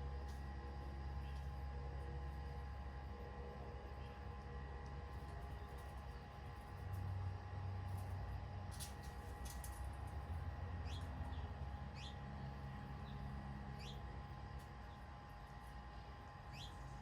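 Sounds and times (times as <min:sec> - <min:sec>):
faint hum: 0:00.0 - 0:17.0
birds chirping: 0:10.8 - 0:12.2, 0:13.8 - 0:14.0, 0:16.5 - 0:16.8.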